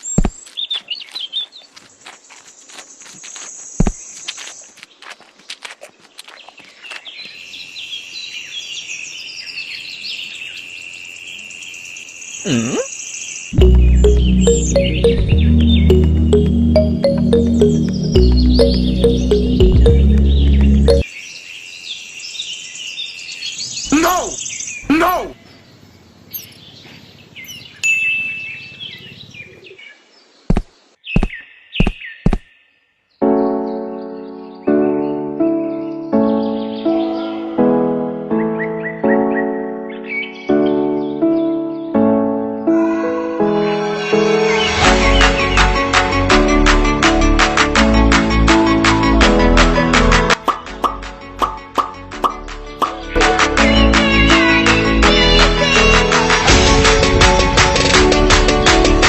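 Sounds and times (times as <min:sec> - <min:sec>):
birds chirping: 0:00.0 - 0:42.7.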